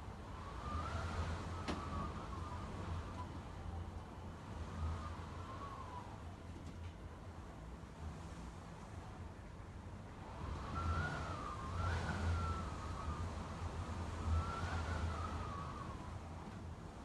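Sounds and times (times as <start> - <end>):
wind buffeting microphone: 0.0 - 6.6, 10.0 - 17.0
wind whistling in gusts: 0.0 - 17.0.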